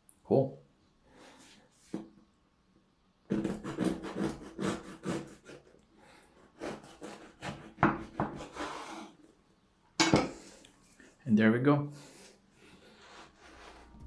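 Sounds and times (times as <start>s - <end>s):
knife sawing through bread: 3.3s - 9.2s, 12.8s - 14.0s.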